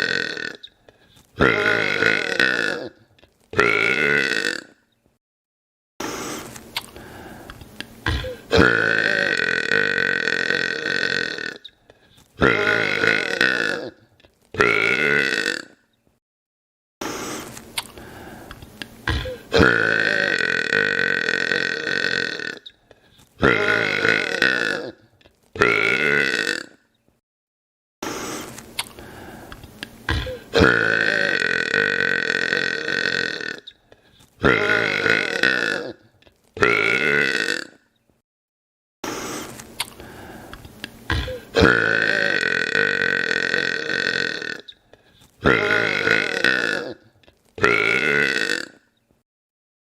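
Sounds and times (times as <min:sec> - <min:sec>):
man burping loudly: 0:00.0 - 0:00.7, 0:01.4 - 0:04.8, 0:08.0 - 0:11.7, 0:12.4 - 0:15.8, 0:19.0 - 0:22.7, 0:23.4 - 0:26.8, 0:30.1 - 0:33.7, 0:34.4 - 0:37.8, 0:41.1 - 0:44.7, 0:45.4 - 0:48.9.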